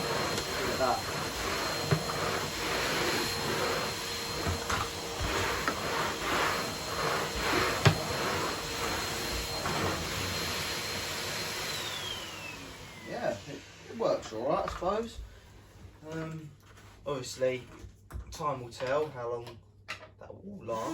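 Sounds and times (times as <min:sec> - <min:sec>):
vacuum motor whining: 0:00.0 - 0:15.0.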